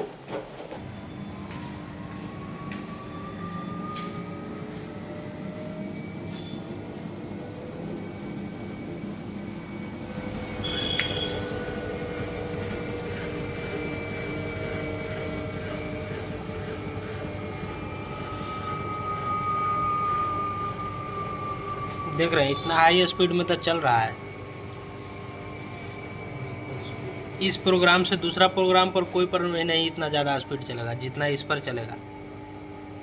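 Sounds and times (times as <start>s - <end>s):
washing machine spinning: 0.0s - 33.0s
click with short high tone: 10.6s - 11.4s.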